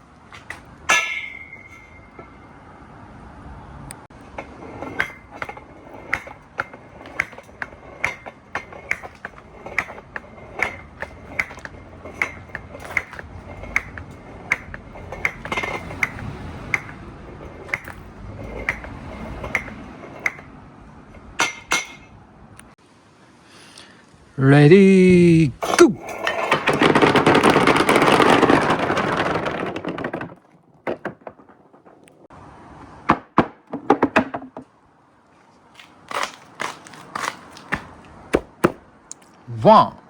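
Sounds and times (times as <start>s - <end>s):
marbles rolling on a track: 4.6s - 20.4s, 26.0s - 32.3s.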